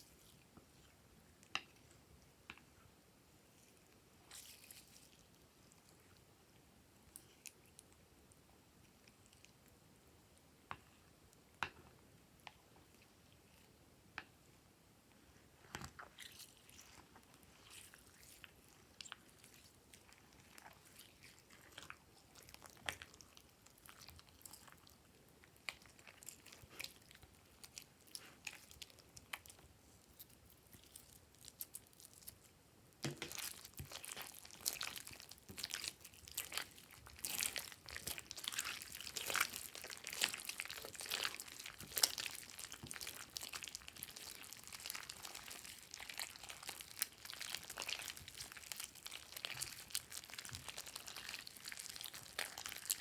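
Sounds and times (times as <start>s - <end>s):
slime squishing: 15.7s - 53.0s.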